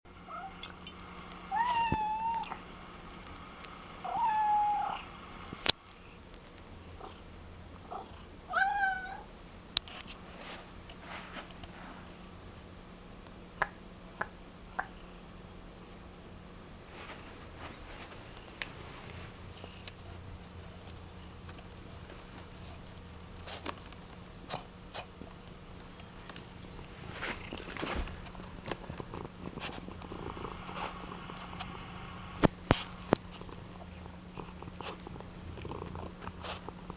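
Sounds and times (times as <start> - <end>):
cat meowing: 1.5 - 2.6, 4.1 - 5.0, 8.5 - 9.3
cat purring: 6.9 - 9.3, 17.3 - 36.9.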